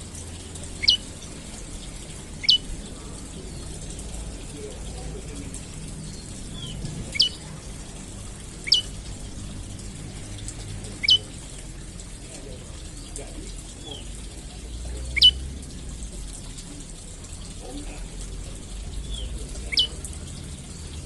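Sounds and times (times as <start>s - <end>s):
bird calling sharp notes: 0.8s - 1.2s, 2.4s - 2.8s, 6.5s - 7.4s, 8.6s - 9.0s, 11.0s - 11.4s, 15.1s - 15.4s, 19.1s - 20.0s.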